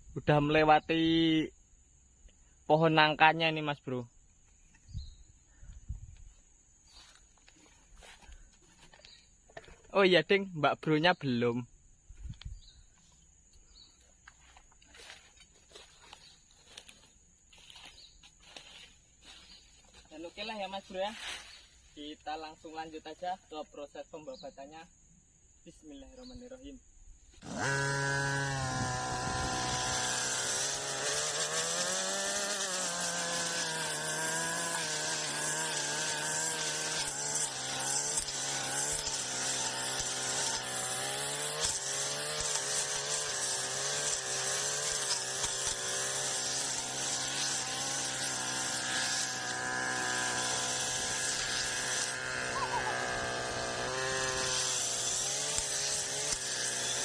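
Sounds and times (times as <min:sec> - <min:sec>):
brush cutter engine running: 0:13.7 - 0:21.6, 0:27.4 - 0:57.0.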